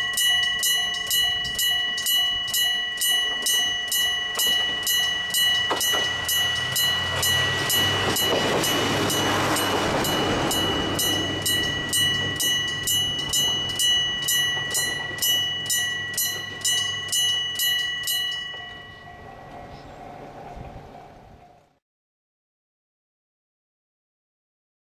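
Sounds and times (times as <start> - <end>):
level crossing bell striking: 0.0 - 21.7
diesel railcar engine hum: 0.0 - 21.8
train wheel noise: 0.0 - 21.8.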